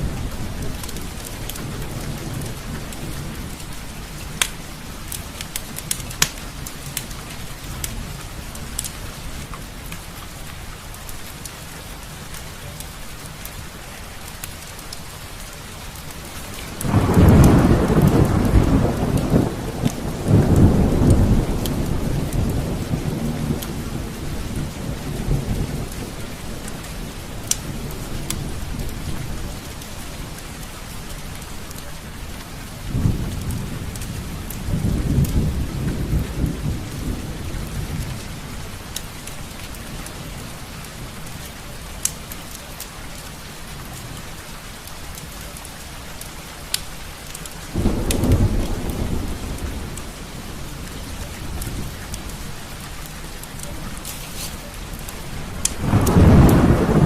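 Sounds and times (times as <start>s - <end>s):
steady rain: 0.0s - 57.0s
fireplace crackling: 4.4s - 7.1s, 51.9s - 55.8s
thunder rumbling: 16.5s - 30.4s, 32.8s - 41.2s, 47.5s - 57.0s.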